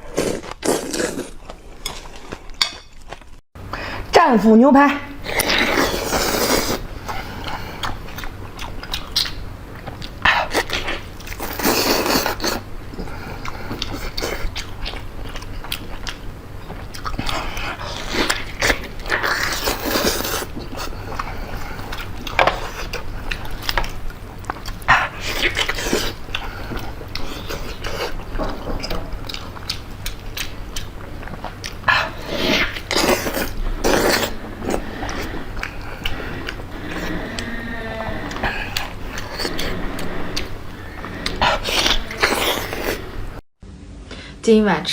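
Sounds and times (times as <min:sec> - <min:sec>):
chewing steak: 0:05.3 - 0:43.4.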